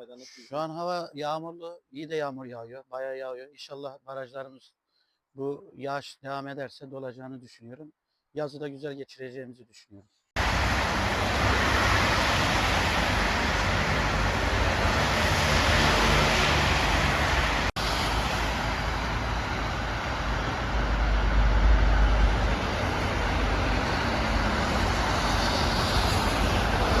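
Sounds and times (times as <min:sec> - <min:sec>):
traffic engine noise: 0:10.4 - 0:27.0
tyres hissing on wet asphalt: 0:10.4 - 0:27.0.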